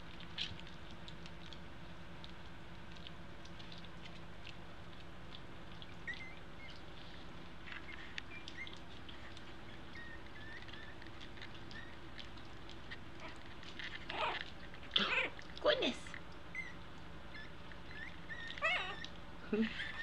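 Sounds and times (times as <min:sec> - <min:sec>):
paws and claws scratching: 0:00.0 - 0:19.2
steady low hum: 0:00.0 - 0:20.0
puppies squeaking: 0:05.7 - 0:19.2, 0:19.8 - 0:20.0.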